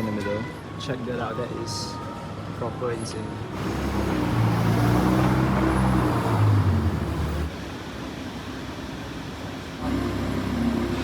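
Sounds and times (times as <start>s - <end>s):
bass-heavy music: 9.8s - 11.0s.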